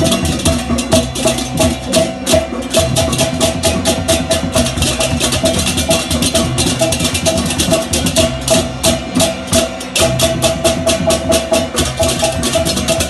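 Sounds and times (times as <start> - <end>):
hand cymbals clashing: 0.0 - 13.0
hand drum strokes: 0.0 - 13.0.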